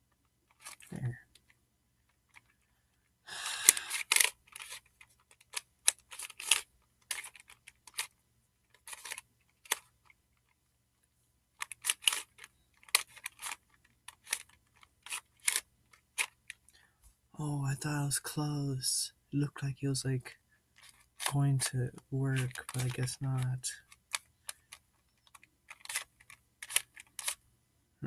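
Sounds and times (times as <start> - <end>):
puzzle cube clicking turns: 0.5 - 1.5, 3.4 - 10.6, 11.6 - 16.7, 20.8 - 27.4.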